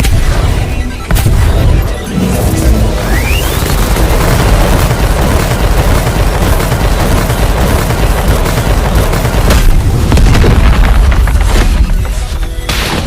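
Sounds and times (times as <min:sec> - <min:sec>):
rapid machine-gun fire: 0:03.4 - 0:11.8.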